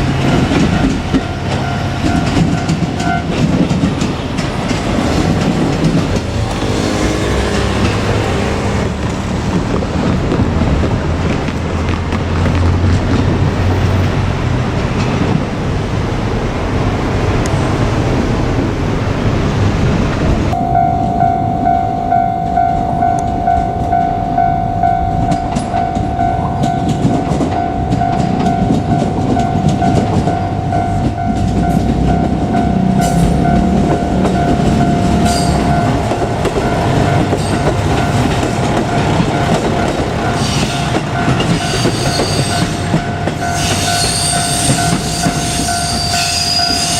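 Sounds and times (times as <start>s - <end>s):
level-crossing warning bell ringing: 0.0s - 9.4s, 20.5s - 46.9s
train wheels clicking over rail joints: 0.0s - 15.8s, 25.2s - 46.9s
diesel railcar rumble: 0.0s - 46.9s.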